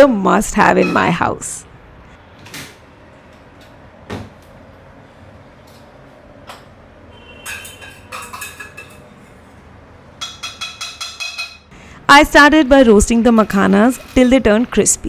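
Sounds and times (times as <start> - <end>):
kitchen utensils clinking: 0.5 - 1.5, 7.4 - 9.5, 10.2 - 15.0.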